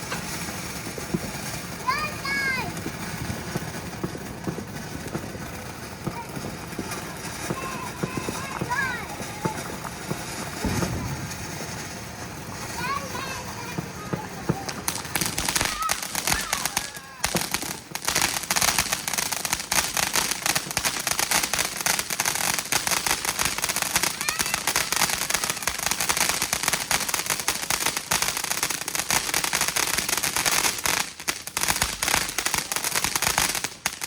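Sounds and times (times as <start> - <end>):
fireworks crackling: 0.0 - 34.0.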